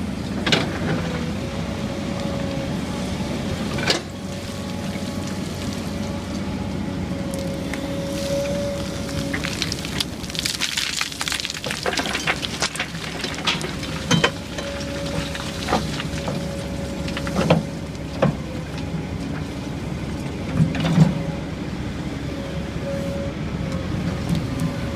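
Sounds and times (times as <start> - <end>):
excavator engine drone: 0.0 - 24.9
dirt and rock clattering: 8.9 - 17.7.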